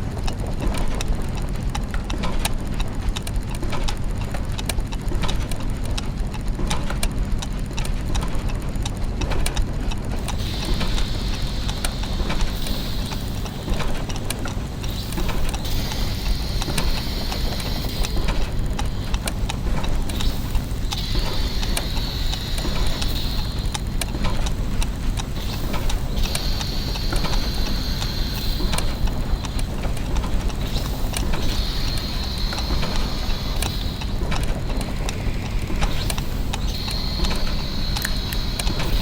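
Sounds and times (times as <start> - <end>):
clockwork gears ticking and clicking: 0.0 - 39.0
low mechanical hum: 0.0 - 39.0
high hiss: 10.4 - 14.0, 14.6 - 24.5, 25.3 - 39.0.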